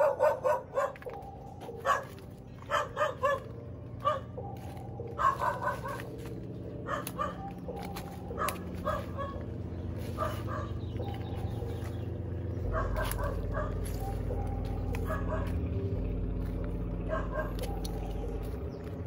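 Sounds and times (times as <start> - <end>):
low hum: 0.0 - 19.0.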